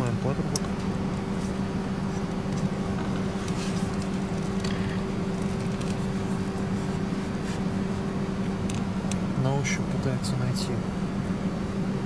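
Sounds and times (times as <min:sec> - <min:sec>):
low mechanical hum: 0:00.0 - 0:12.0
rubber hose clicks and rustles: 0:02.4 - 0:06.4.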